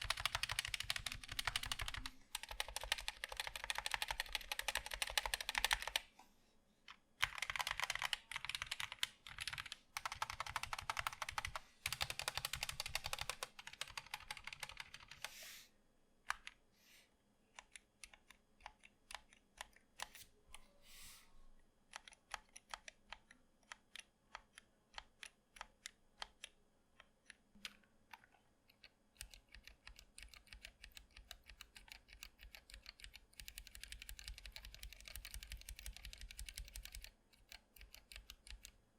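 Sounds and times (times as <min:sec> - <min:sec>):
mechanical keyboard typing: 0:00.0 - 0:06.0, 0:07.2 - 0:15.3, 0:27.6 - 0:38.8.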